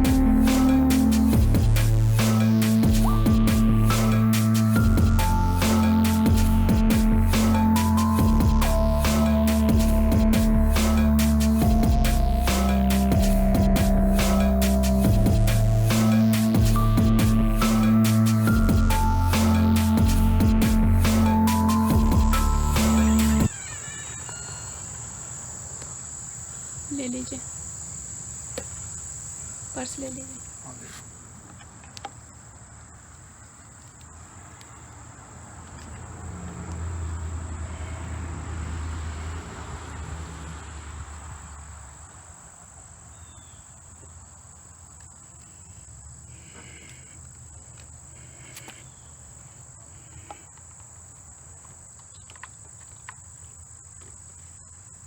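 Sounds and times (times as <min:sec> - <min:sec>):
low rumble: 0:00.0 - 0:23.5
insect chorus trilling: 0:00.0 - 0:55.0.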